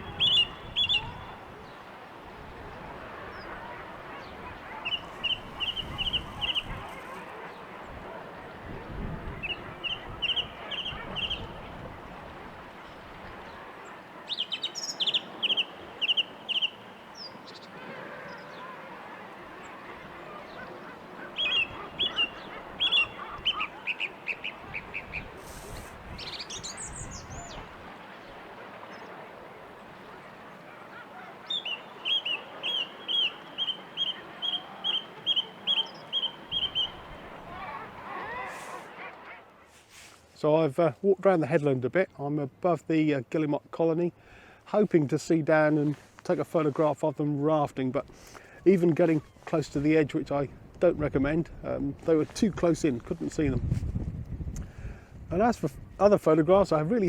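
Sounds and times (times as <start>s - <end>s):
bird calling sharp notes: 0.0s - 1.5s, 9.4s - 11.6s, 13.4s - 39.4s.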